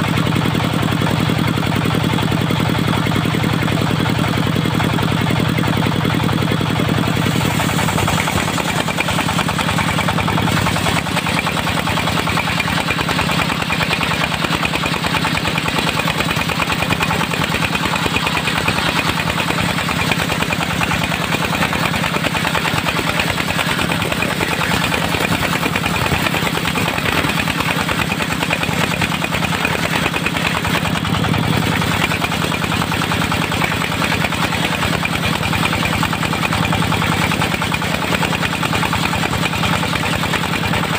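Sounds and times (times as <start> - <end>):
diesel engine droning: 0.0 - 40.9.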